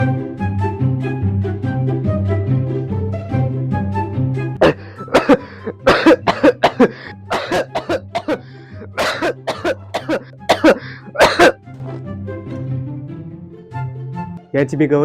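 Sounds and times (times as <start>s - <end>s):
person coughing hard: 4.6s - 12.0s.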